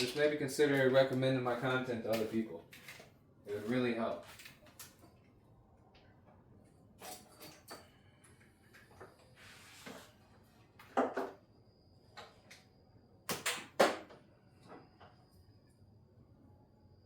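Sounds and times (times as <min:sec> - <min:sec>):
metal tools clanking: 0:07.0 - 0:08.0.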